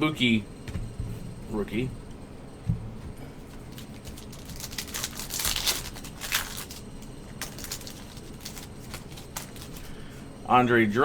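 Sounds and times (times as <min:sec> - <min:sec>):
plastic sleeves crinkling: 0:03.4 - 0:10.1.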